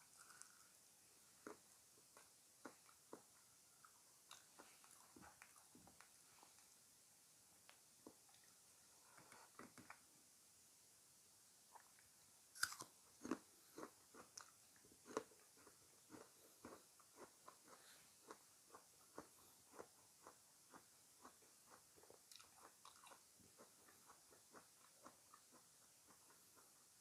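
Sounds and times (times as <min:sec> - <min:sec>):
person chewing crunchy fruit: 0:00.0 - 0:06.6, 0:12.6 - 0:27.0.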